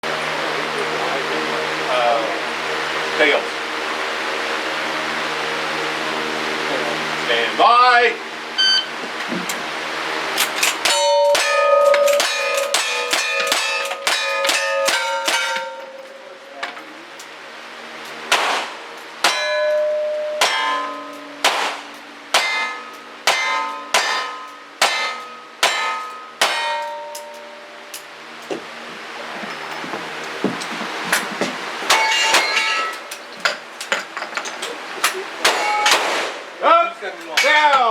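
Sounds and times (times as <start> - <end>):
steel target ringing: 10.4 - 16.6, 18.3 - 28.1, 31.9 - 34.2, 35.4 - 36.2, 37.3 - 37.9
gunshots: 18.3 - 19.4, 21.4 - 26.6, 35.4 - 36.5.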